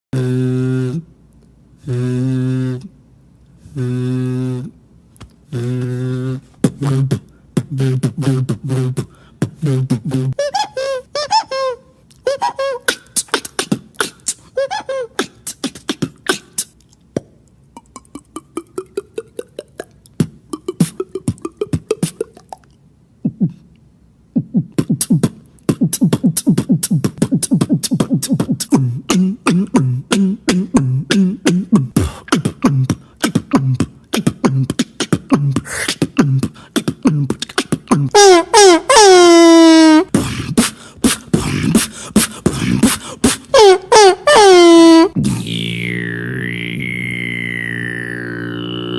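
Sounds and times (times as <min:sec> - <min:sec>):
beatboxing clicks and hits: 0:00.2 - 0:10.7, 0:12.1 - 0:23.8, 0:24.4 - 0:38.6, 0:39.8 - 0:44.4, 0:45.1 - 0:48.9
rising vocal tone: 0:45.1 - 0:48.9
low hummed bass line: 0:45.2 - 0:48.9.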